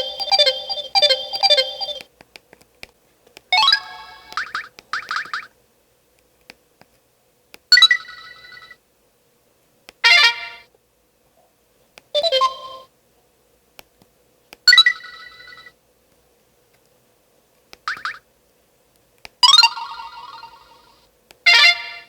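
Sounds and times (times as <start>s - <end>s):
phone notification chimes: 0.0s - 2.0s.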